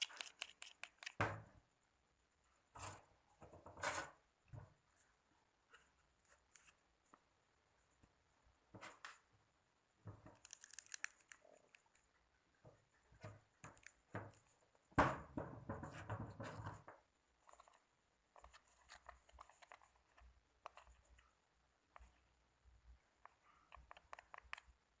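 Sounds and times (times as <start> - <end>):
rough sticky noise: 0.0 - 1.2, 10.3 - 12.1.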